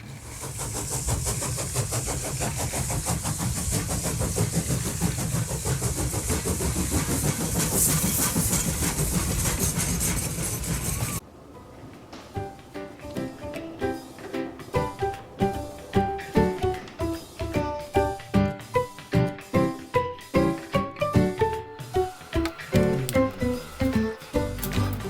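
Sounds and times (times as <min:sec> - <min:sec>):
motor running with rattle: 0:22.1 - 0:25.0.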